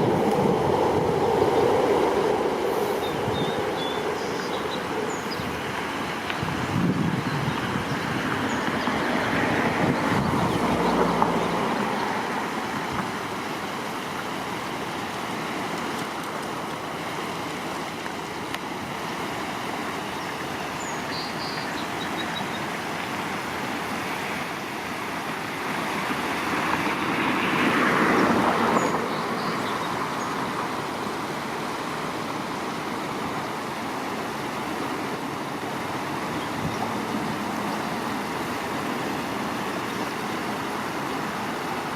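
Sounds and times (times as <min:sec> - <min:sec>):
road traffic rushing: 0:00.0 - 0:14.2, 0:23.2 - 0:31.7, 0:34.8 - 0:41.9
vehicles passing: 0:00.0 - 0:17.0, 0:22.9 - 0:33.2, 0:34.8 - 0:41.9.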